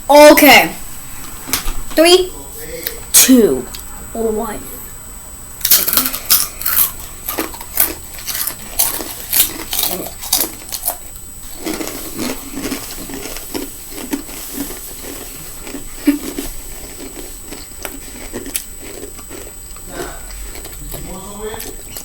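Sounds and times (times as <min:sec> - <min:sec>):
people crunching chips: 0:05.6 - 0:22.0.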